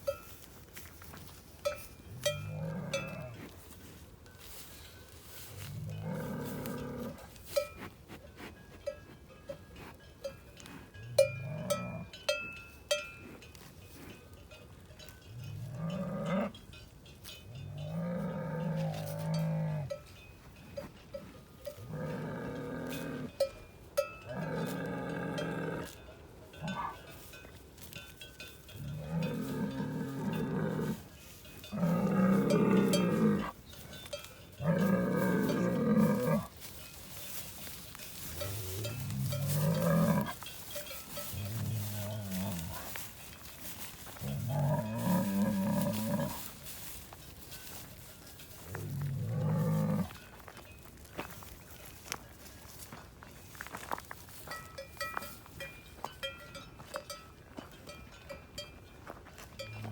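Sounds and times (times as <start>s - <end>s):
cowbells clanking: 0.0s - 59.9s
cattle mooing: 5.7s - 7.3s, 17.8s - 20.0s, 21.7s - 23.4s, 24.3s - 26.0s, 28.9s - 31.0s, 31.7s - 33.6s, 34.6s - 36.5s, 38.4s - 40.4s, 41.3s - 43.0s, 44.2s - 46.5s, 48.7s - 50.2s.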